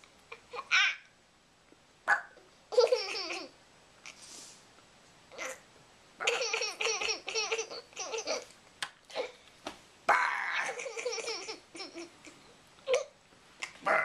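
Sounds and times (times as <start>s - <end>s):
baby laughing: 0.4s - 1.0s, 2.7s - 3.6s, 6.2s - 8.5s, 10.5s - 13.8s.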